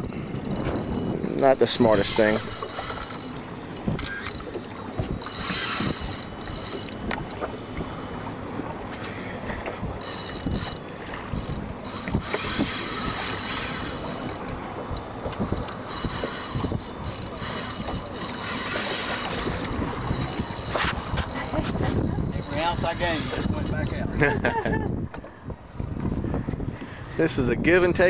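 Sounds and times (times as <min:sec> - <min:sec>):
fishing reel clicking and whirring: 0:00.0 - 0:07.4, 0:10.0 - 0:24.3
water noise: 0:00.0 - 0:28.0
wind: 0:00.0 - 0:28.0.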